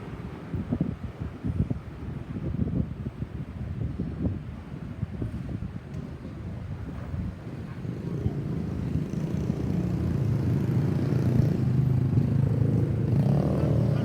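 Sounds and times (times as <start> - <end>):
vehicle engine humming: 11.3 - 14.0.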